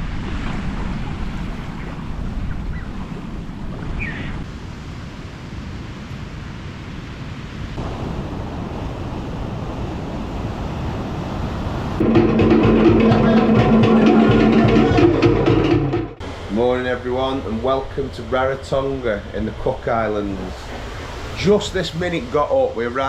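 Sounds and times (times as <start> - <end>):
ocean surf washing on shore: 0.0 - 15.5, 16.2 - 23.0
wind buffeting microphone: 0.0 - 16.6.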